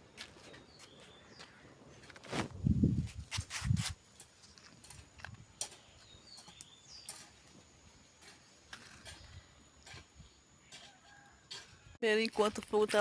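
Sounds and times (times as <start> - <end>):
bird chirping: 5.5 - 8.2.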